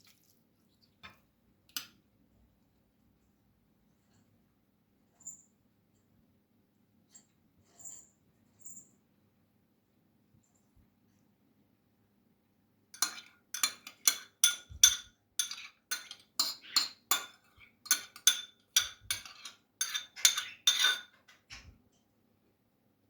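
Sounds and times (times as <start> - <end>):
metal utensil clinking against bowl: 13.0 - 21.4.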